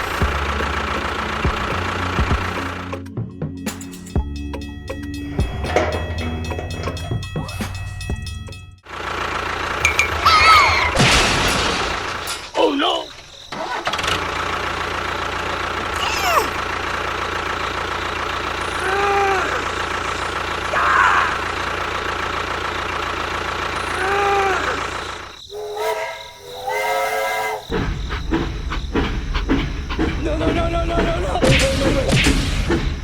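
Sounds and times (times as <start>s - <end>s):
mechanical motor running with hum: 0.0s - 3.0s.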